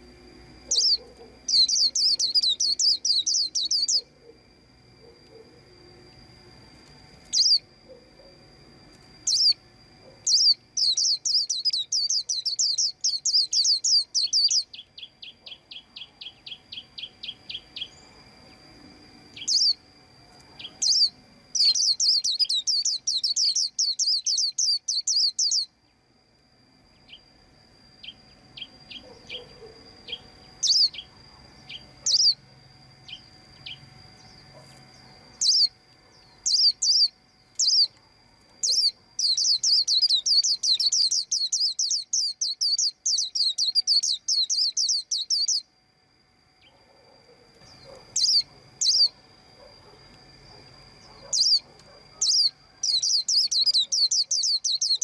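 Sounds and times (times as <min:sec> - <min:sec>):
bird chirping and trilling: 0:00.6 - 0:04.4, 0:07.3 - 0:08.0, 0:09.2 - 0:09.6, 0:10.2 - 0:18.6, 0:19.4 - 0:19.8, 0:20.6 - 0:25.8, 0:28.0 - 0:38.0, 0:38.6 - 0:45.7, 0:47.6 - 0:49.2, 0:51.0 - 0:55.0.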